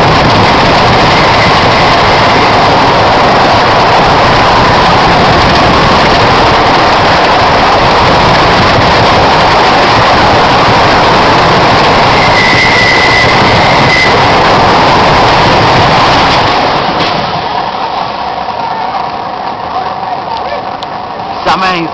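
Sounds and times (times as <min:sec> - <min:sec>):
wind noise on microphone: 0:00.0 - 0:18.3
high steady squeal: 0:00.0 - 0:19.9
roller coaster on track: 0:00.0 - 0:21.9.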